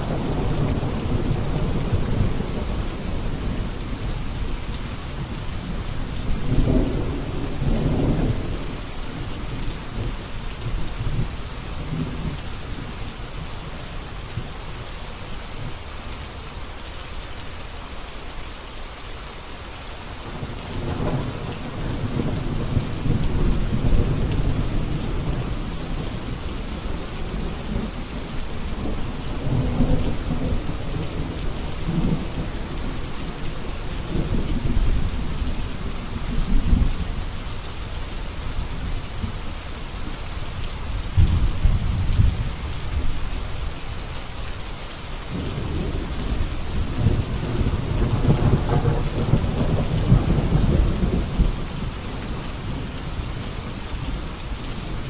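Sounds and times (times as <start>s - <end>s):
rolling thunder rumbling: 0.0s - 9.5s, 20.3s - 37.1s, 45.3s - 55.0s
steady rain falling: 0.0s - 55.0s.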